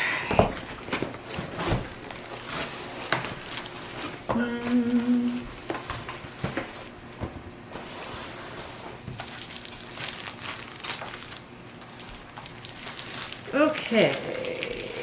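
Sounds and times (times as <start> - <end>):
packaging rustling and crinkling: 0.5 - 4.3, 7.8 - 15.0.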